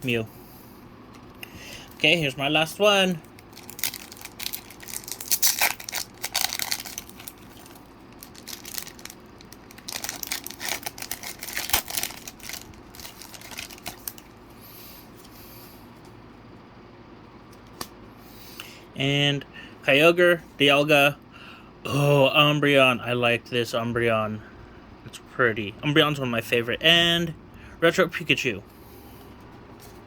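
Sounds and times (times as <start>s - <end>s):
faint room hum: 0.0s - 30.0s
foil wrapper crinkling and tearing: 1.8s - 14.3s.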